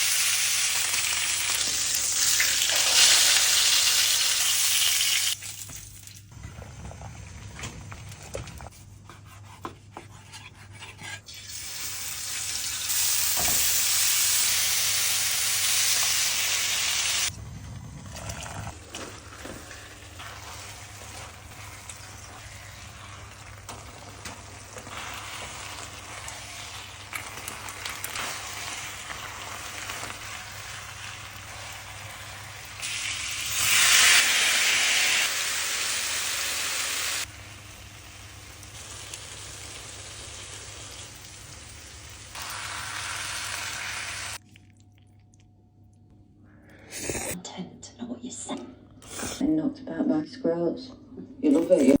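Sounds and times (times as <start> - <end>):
food sizzling in a pan: 0.0 - 5.4, 11.4 - 17.3, 19.4 - 44.4.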